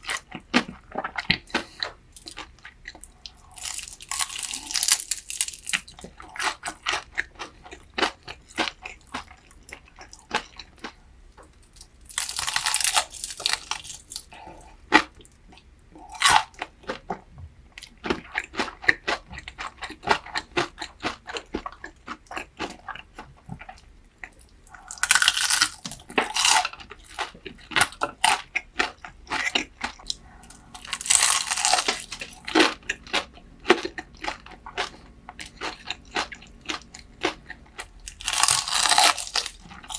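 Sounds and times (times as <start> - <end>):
crunching and chewing food: 0.0 - 39.9.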